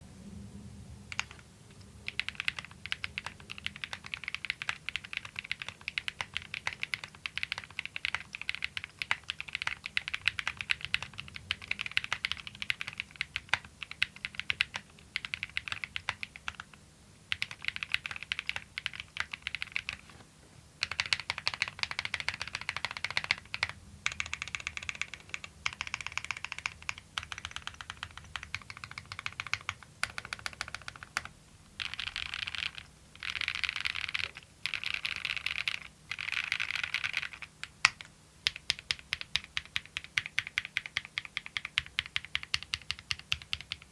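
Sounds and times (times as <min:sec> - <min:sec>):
mechanical keyboard typing: 0:01.1 - 0:01.4, 0:02.0 - 0:20.1, 0:20.8 - 0:43.9.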